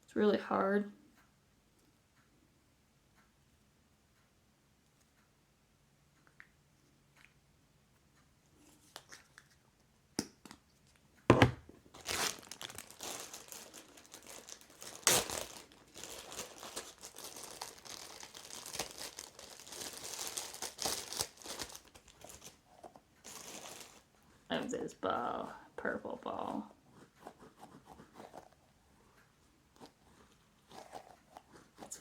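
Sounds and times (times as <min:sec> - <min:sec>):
crinkling and rustling: 0:10.6 - 0:25.0, 0:27.0 - 0:32.0.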